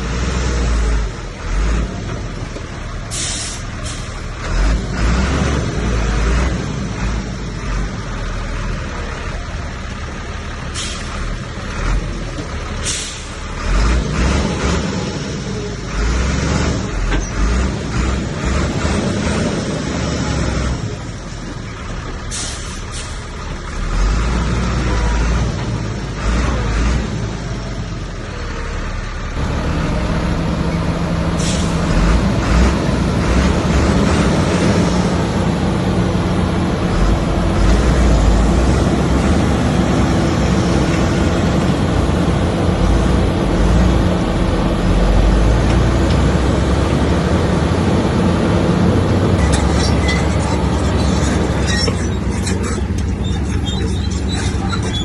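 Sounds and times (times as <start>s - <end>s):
heavy diesel engine rumbling: 0.0s - 55.0s.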